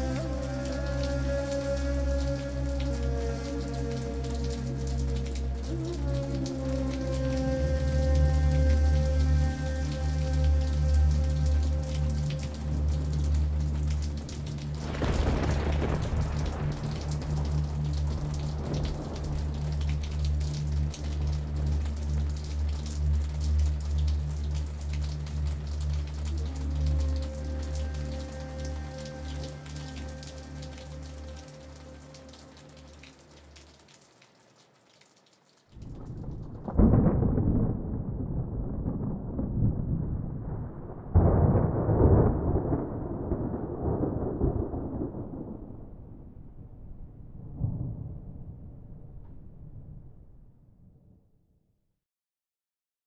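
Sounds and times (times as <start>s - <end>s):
rain falling: 0.0s - 45.9s
thunder rumbling: 8.2s - 23.9s, 35.8s - 50.4s
single raindrops clicking: 11.5s - 36.5s.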